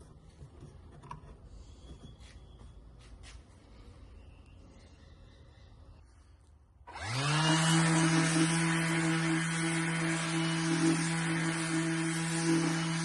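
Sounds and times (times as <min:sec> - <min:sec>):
power tool motor humming: 0:06.9 - 0:13.0.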